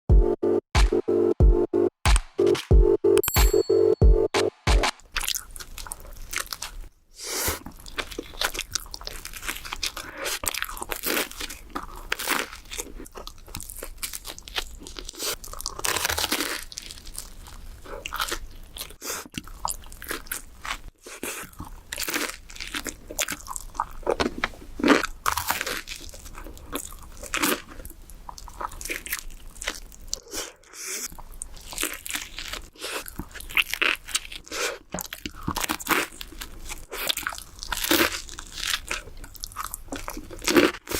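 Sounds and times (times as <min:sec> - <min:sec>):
crunchy pizza chewing: 0:05.0 - 0:40.9.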